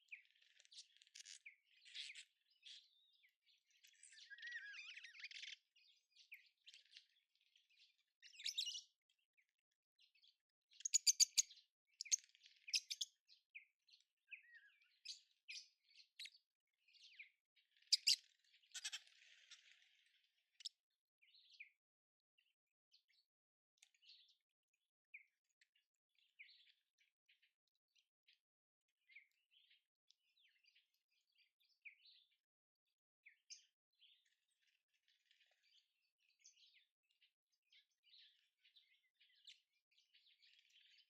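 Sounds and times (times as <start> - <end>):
birds chirping: 0.0 - 9.0, 10.1 - 21.8.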